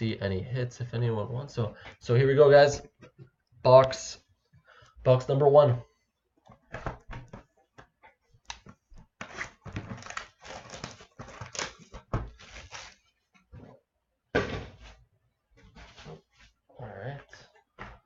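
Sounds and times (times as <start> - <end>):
cardboard rustling: 8.8 - 13.3
plastic wrapping crinkling: 9.2 - 13.1.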